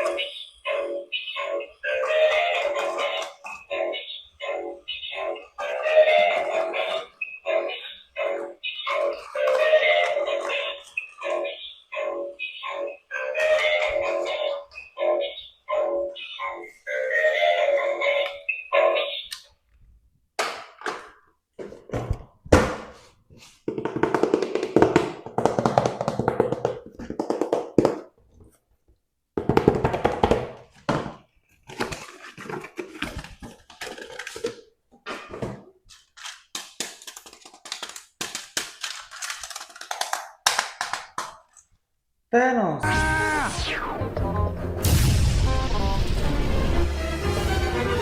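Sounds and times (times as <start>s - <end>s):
plastic packaging crinkling: 31.6s - 34.7s, 35.9s - 41.6s
plastic packaging clicks and taps: 36.1s - 41.7s.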